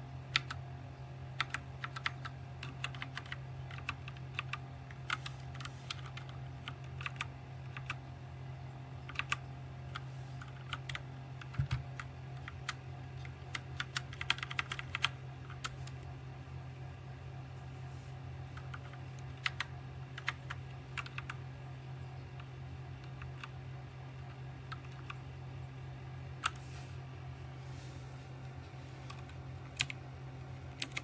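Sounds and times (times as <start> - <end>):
mechanical keyboard typing: 0.3 - 0.6, 1.4 - 8.0, 9.0 - 16.0, 18.6 - 21.4, 23.0 - 23.6, 24.3 - 25.2, 29.1 - 30.0, 30.7 - 31.0.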